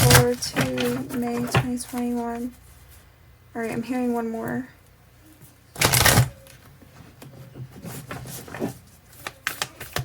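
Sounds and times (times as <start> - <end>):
cards shuffling: 7.9 - 10.0.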